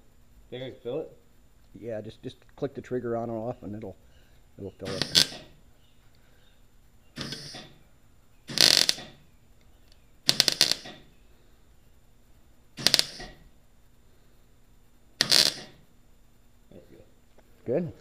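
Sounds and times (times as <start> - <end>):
welder arc crackling: 4.6 - 5.6, 7.1 - 11.1, 12.7 - 13.7, 15.2 - 15.9.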